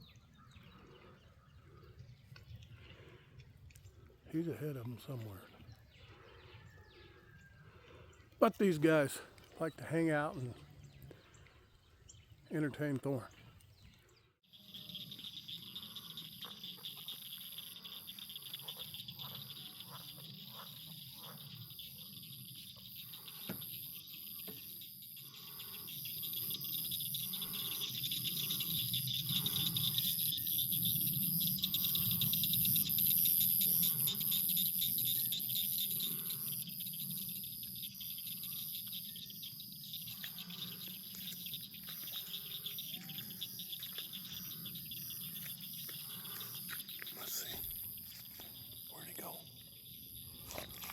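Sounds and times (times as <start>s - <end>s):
crickets and insects trilling: 8.4s - 10.5s, 14.5s - 50.9s.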